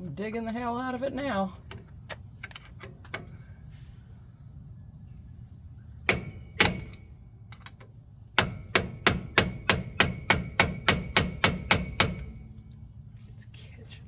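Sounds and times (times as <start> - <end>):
hammer striking metal tool: 6.1 - 7.0, 8.4 - 12.3.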